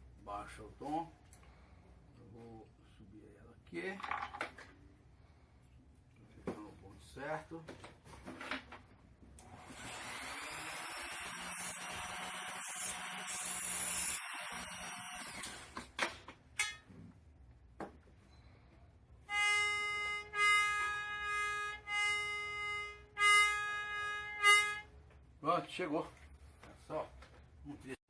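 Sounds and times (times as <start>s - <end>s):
small power tool whirring: 9.4s - 15.9s
accordion reed notes: 19.2s - 24.9s.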